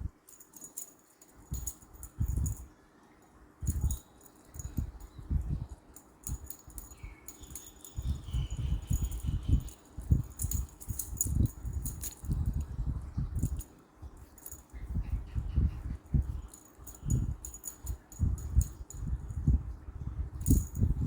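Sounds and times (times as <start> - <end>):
jingling rattling clicks: 0.3 - 2.6, 3.6 - 12.7, 13.4 - 13.7, 14.3 - 14.8, 16.1 - 19.6, 20.4 - 20.9.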